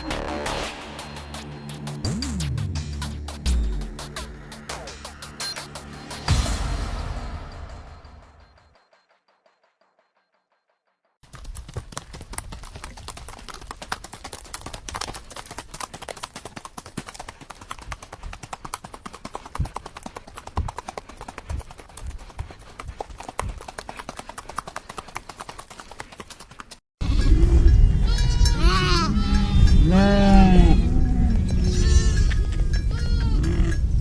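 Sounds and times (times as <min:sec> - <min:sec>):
clattering of hooves: 0:11.2 - 0:26.8
animals bleating: 0:28.0 - 0:33.8.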